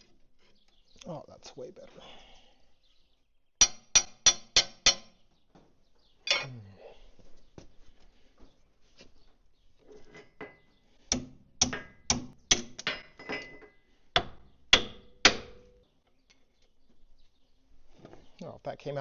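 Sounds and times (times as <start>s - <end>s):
hammer striking steel: 3.6s - 5.2s, 14.2s - 15.8s.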